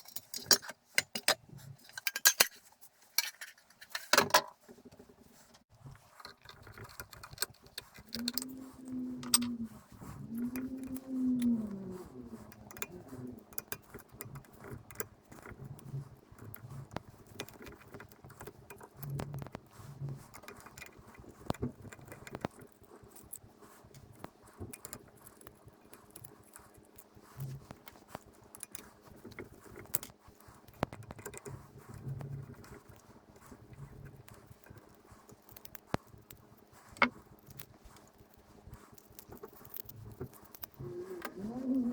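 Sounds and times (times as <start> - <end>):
metal tools and parts clinking: 0.0 - 4.6, 9.2 - 9.5.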